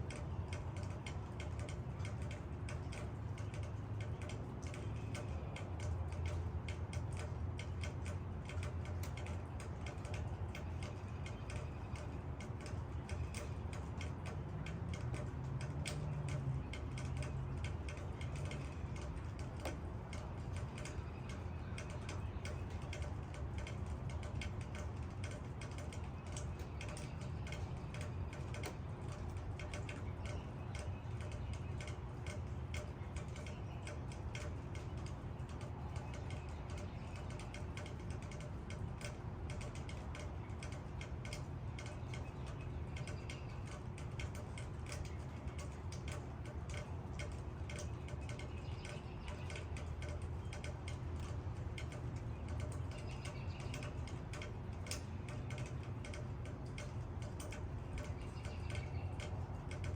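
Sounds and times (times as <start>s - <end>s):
rain pattering on leaves: 0.0s - 59.9s.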